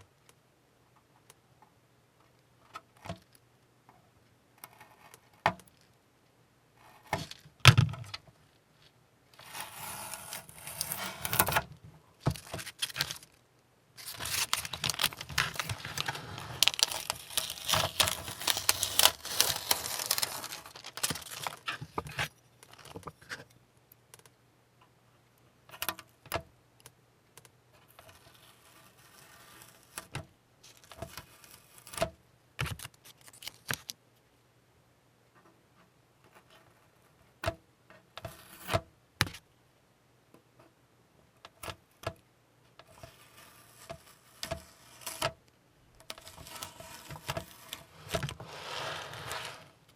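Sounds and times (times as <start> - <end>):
masking tape peeling: 14.0 - 21.7, 46.4 - 49.8.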